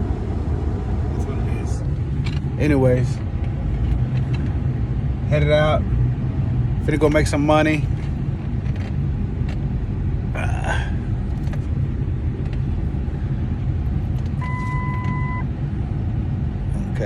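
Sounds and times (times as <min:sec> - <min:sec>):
car driving rumble: 0:00.0 - 0:17.0
electronic beep: 0:14.4 - 0:15.4.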